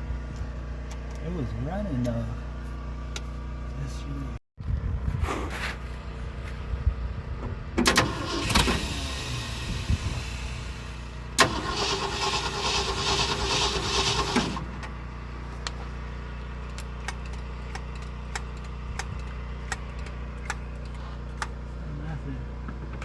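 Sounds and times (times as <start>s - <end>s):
engine cranking by starter: 7.8s - 15.0s, 16.6s - 21.6s.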